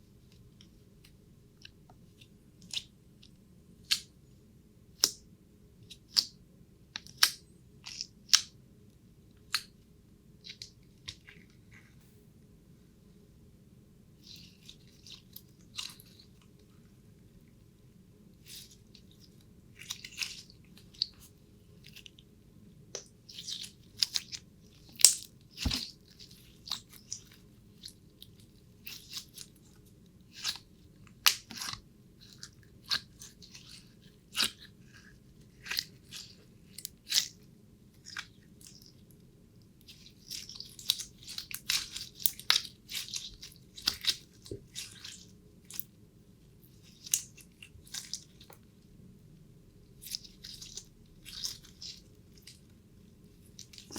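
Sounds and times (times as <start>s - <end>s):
faint low hum: 0.0s - 53.9s
crisp crunching and crackling: 23.3s - 29.7s, 39.9s - 46.0s, 50.0s - 52.7s, 53.4s - 53.9s.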